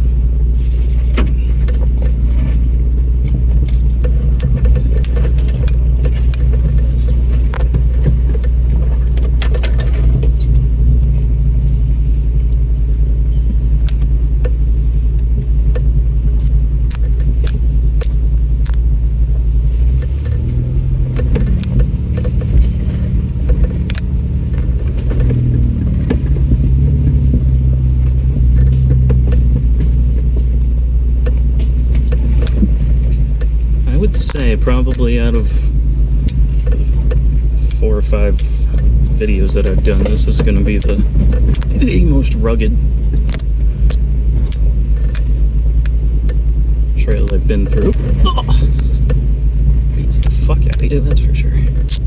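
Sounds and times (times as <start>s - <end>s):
truck engine running: 0.0s - 52.0s
vehicle clicks and rattles: 0.0s - 52.0s.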